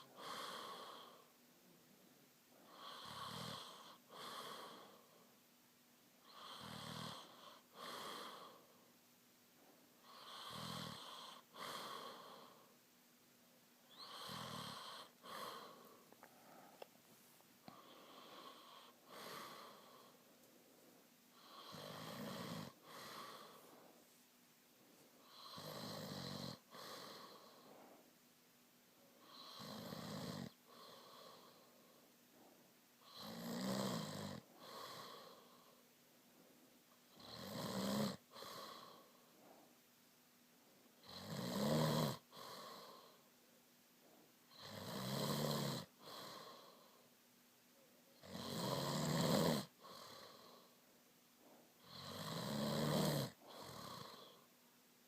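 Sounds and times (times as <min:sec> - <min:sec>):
person snoring: 0:02.6 - 0:05.2, 0:06.2 - 0:08.8, 0:10.0 - 0:12.7, 0:13.9 - 0:16.0, 0:17.7 - 0:20.2, 0:21.4 - 0:23.8, 0:25.2 - 0:27.7, 0:29.2 - 0:32.0, 0:33.0 - 0:35.8, 0:37.1 - 0:39.2, 0:41.0 - 0:43.2, 0:44.5 - 0:47.0, 0:48.2 - 0:50.8, 0:51.8 - 0:54.5
soft breath out: 0:14.8 - 0:25.7, 0:26.6 - 0:28.2, 0:38.2 - 0:40.0, 0:49.8 - 0:51.9.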